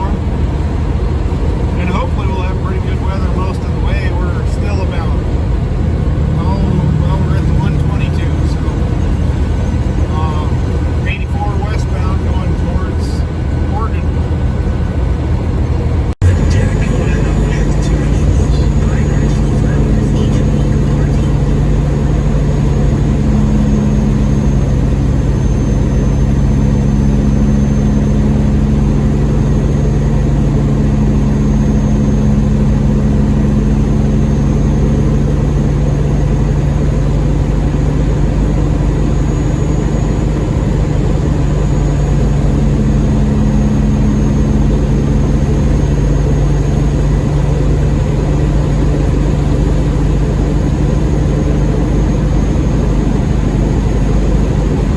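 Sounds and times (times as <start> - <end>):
diesel truck engine droning: 0.0 - 54.9.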